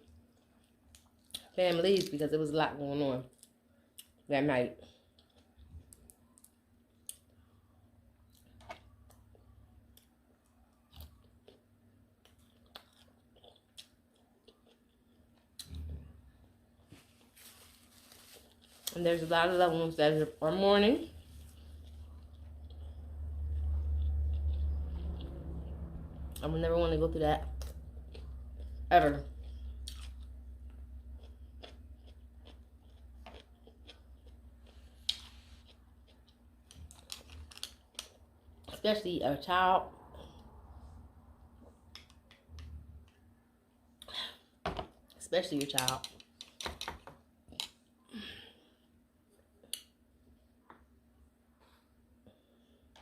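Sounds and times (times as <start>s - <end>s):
faint steady hum: 0.0s - 53.0s
quiet chewing: 4.8s - 7.6s, 8.2s - 17.4s, 21.1s - 26.3s, 27.5s - 38.8s.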